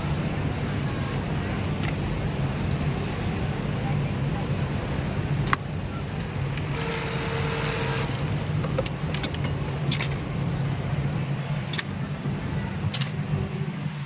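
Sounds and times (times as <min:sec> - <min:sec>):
sewing machines humming: 0:00.0 - 0:13.7
high whine: 0:00.0 - 0:14.0.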